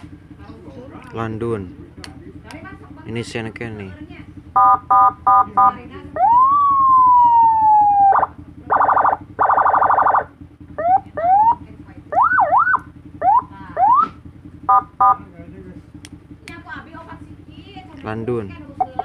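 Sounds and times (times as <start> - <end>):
electronic siren tones: 4.6 - 15.2.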